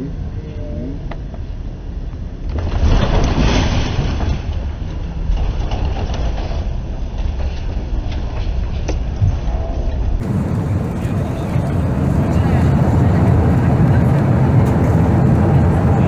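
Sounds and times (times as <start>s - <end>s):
airplane cabin noise: 10.2s - 16.0s.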